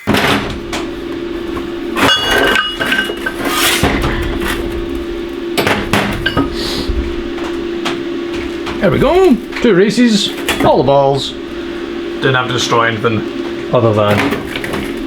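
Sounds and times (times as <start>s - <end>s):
metallic ring: 0.0s - 15.0s
steady hum: 0.0s - 15.0s
steel bearing parts clanking: 0.0s - 15.0s.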